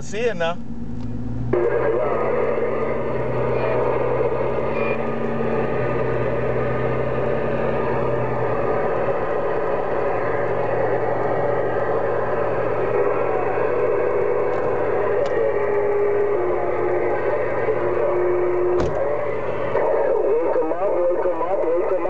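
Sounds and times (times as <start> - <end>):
low hum: 0.0 - 22.0
radio static: 1.5 - 5.7, 12.6 - 22.0.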